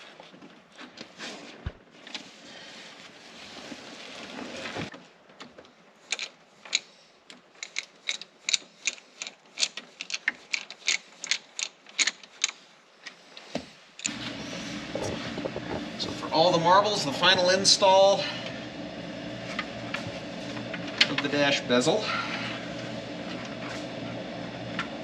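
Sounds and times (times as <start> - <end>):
hand ratchet clicking: 6.1 - 6.9, 7.6 - 12.6.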